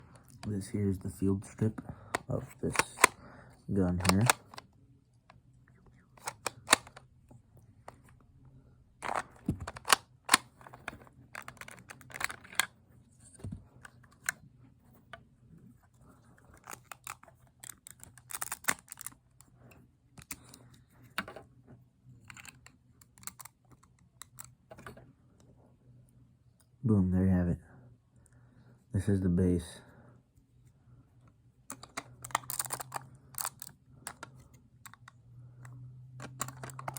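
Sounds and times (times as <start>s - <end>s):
plastic bricks clicking and snapping: 2.1s - 3.2s, 3.9s - 4.6s, 6.2s - 7.0s, 9.0s - 12.7s, 16.6s - 19.2s, 22.3s - 24.9s, 31.7s - 35.2s, 36.2s - 36.9s.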